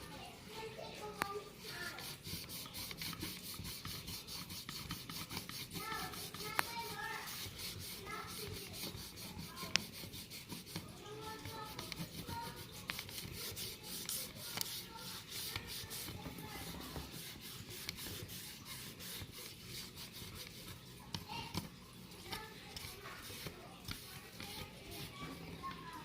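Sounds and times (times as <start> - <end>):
paper towel rubbing plastic: 1.1 - 26.0.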